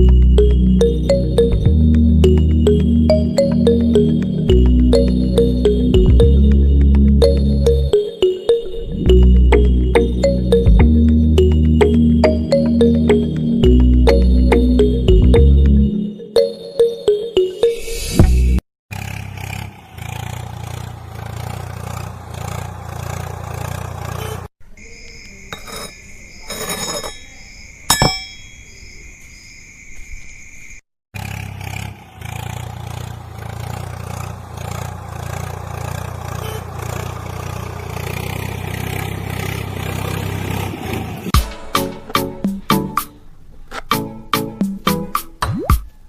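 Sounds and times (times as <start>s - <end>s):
steady high tones: 0.0s - 18.4s
heavy machinery engine rumbling: 31.7s - 41.4s.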